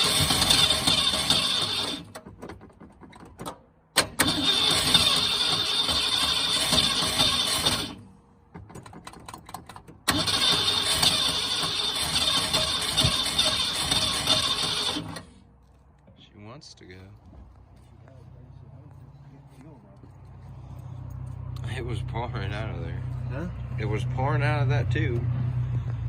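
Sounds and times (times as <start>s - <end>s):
car engine cranking on starter: 0.0s - 15.4s.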